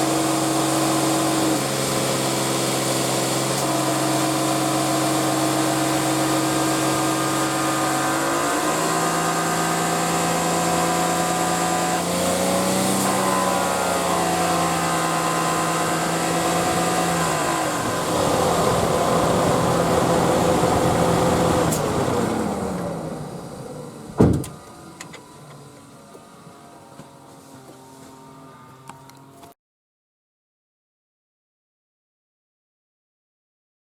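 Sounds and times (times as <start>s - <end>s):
car engine revving: 0.0s - 29.4s
loud thump: 24.1s - 24.6s.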